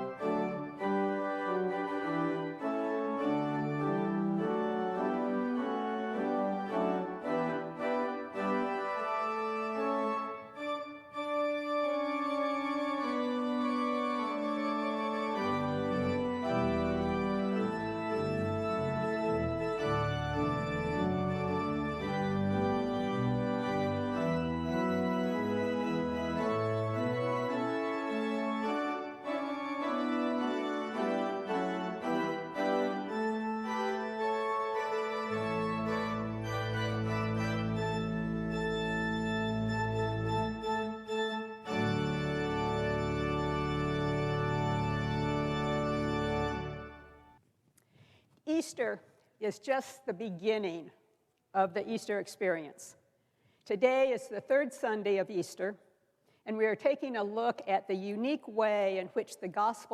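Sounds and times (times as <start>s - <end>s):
deep organ pedal bass notes: 0.0s - 47.2s
church organ chords: 0.0s - 47.4s.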